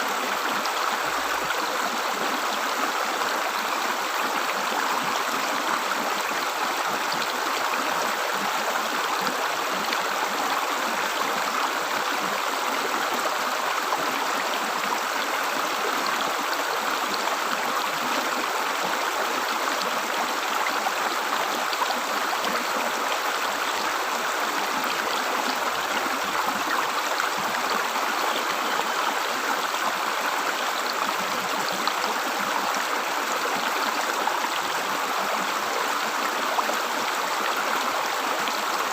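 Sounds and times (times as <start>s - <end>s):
stream gurgling over rocks: 0.0s - 38.9s.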